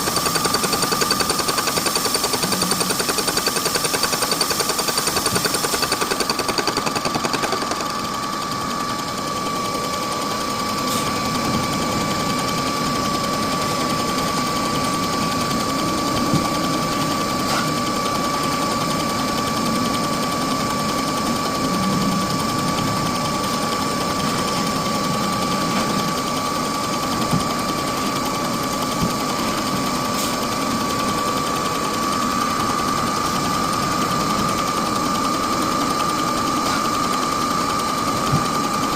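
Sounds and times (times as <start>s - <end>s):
milling machine whine: 0.0s - 38.9s.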